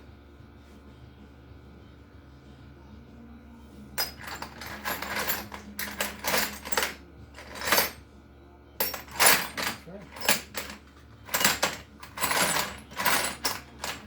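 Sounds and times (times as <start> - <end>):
metal bolts clinking and rattling: 4.0 - 8.0, 8.8 - 14.0.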